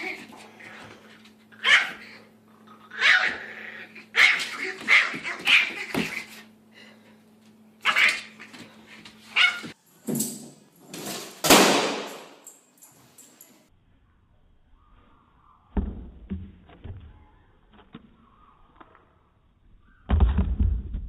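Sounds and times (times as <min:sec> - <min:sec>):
dog barking: 0:01.6 - 0:02.0, 0:04.2 - 0:05.8, 0:09.3 - 0:09.7.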